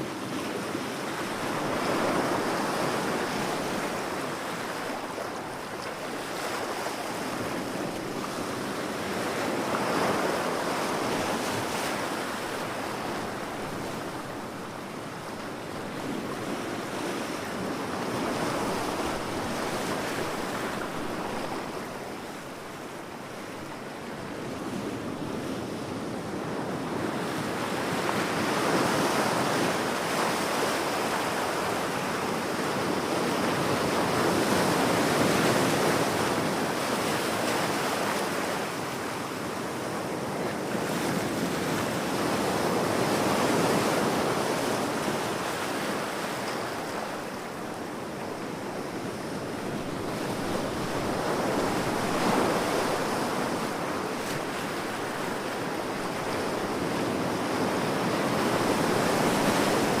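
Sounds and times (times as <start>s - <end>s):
ocean waves breaking on beach: 0.0s - 60.0s.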